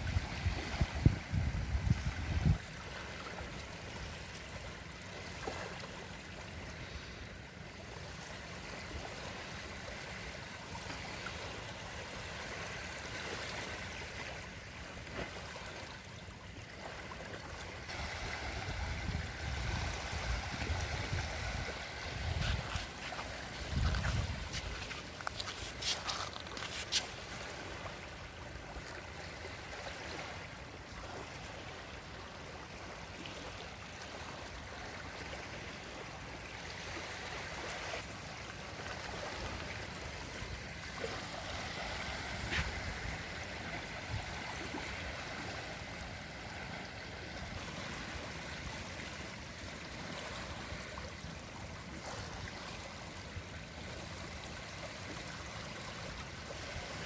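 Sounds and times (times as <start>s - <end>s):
sea water lapping on shore: 0.0s - 57.0s.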